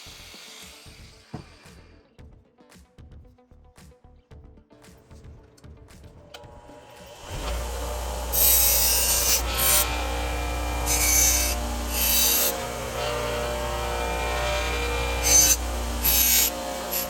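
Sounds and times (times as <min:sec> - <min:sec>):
electric power tool running: 0:00.0 - 0:02.0, 0:06.4 - 0:17.0
metal trim rasping against tool: 0:08.3 - 0:17.0.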